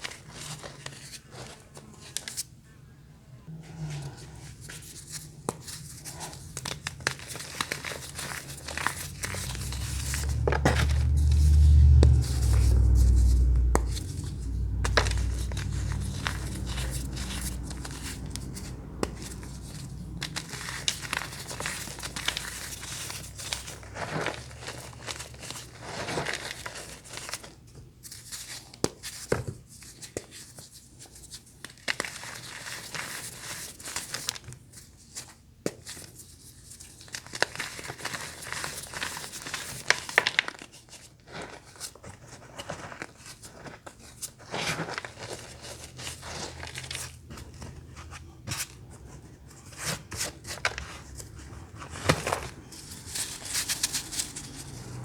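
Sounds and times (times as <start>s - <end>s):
deep low rumble: 3.5s - 25.4s.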